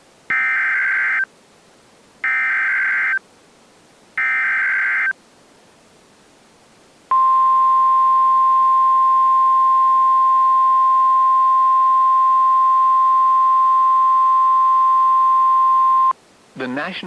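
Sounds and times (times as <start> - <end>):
emergency alert steady tone: 0.3 - 1.3, 2.2 - 3.2, 4.2 - 5.2, 7.1 - 16.1.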